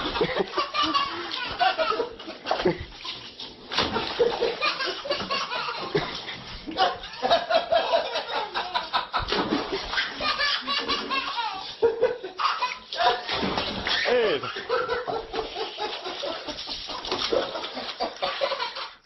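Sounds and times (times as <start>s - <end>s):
people laughing: 0.0s - 19.0s.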